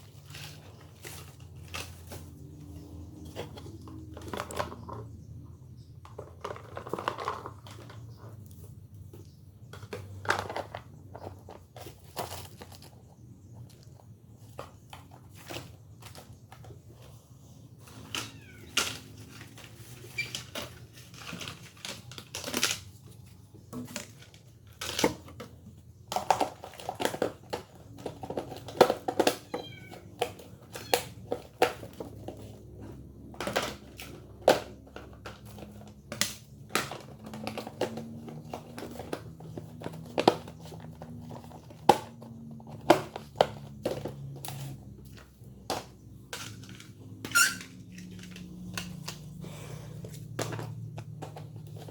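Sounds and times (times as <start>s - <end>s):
cat meowing: 18.1s - 18.8s, 29.4s - 30.1s.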